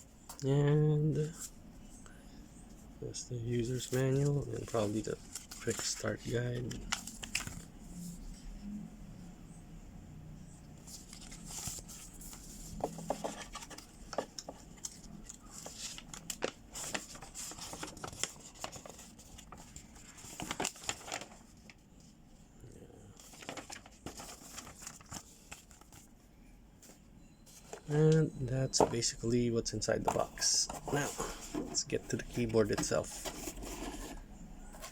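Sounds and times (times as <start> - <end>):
paper rustling and crinkling: 3.6 - 7.7, 10.9 - 21.8, 23.2 - 26.1, 29.8 - 34.9.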